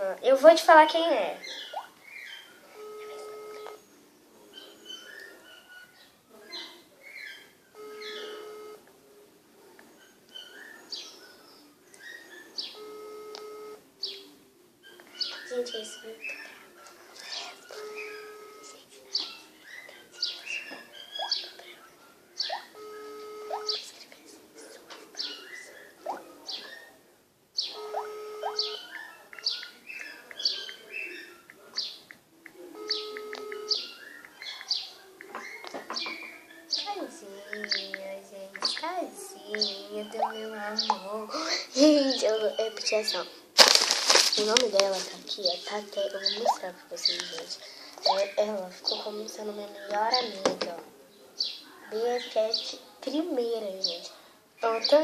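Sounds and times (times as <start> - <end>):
birds chirping: 0.0 - 55.0
phone ringback tone: 2.7 - 3.9, 7.8 - 8.9, 12.6 - 13.9, 17.7 - 18.8, 22.6 - 23.9, 27.7 - 28.8, 32.7 - 34.0.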